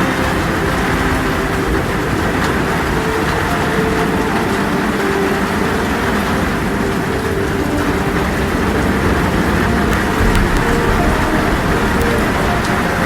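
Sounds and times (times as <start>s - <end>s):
heavy rain: 0.0s - 13.0s
wind howling: 0.0s - 13.0s
low rumble: 10.2s - 13.0s.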